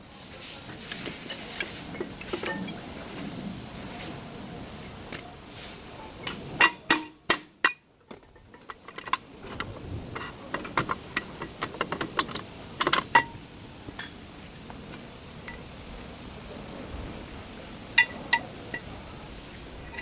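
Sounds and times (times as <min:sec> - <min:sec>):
metal tools clinking: 0:00.7 - 0:03.3, 0:06.2 - 0:14.2, 0:18.0 - 0:18.9, 0:19.8 - 0:20.0.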